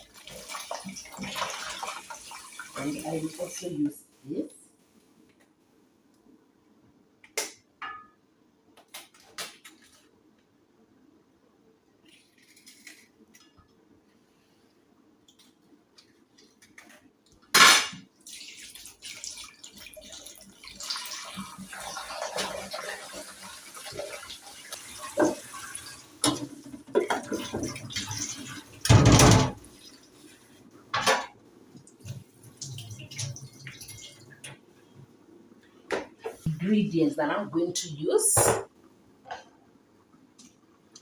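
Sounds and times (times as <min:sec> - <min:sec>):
water running from tap: 0:00.0 - 0:03.8, 0:18.2 - 0:30.5, 0:31.8 - 0:34.6.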